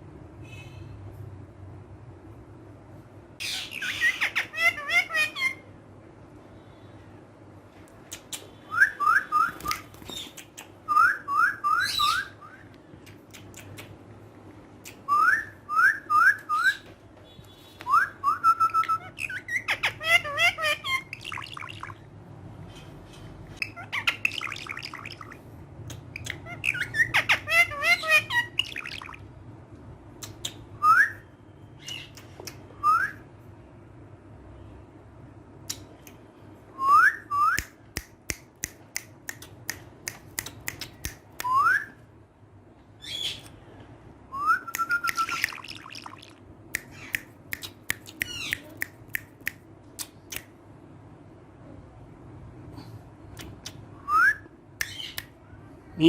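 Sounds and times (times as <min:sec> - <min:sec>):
parrot chattering squawks: 0:03.4 - 0:05.7, 0:18.7 - 0:22.0, 0:23.6 - 0:25.4, 0:26.1 - 0:29.2, 0:48.1 - 0:48.8.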